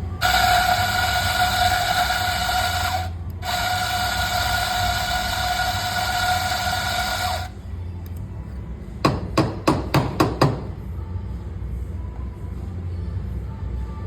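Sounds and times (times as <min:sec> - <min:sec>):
coffee grinder whirring: 0:00.2 - 0:07.5.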